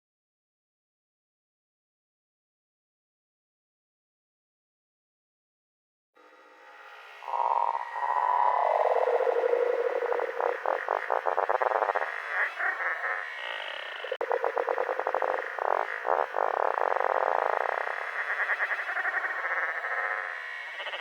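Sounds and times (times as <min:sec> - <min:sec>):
stuttering electronic pulses: 0:07.2 - 0:12.4, 0:14.0 - 0:18.0.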